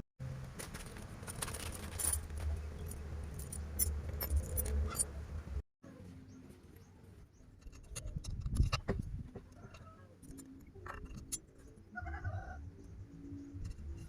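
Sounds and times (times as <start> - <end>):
metal tools clinking: 0.7 - 5.2.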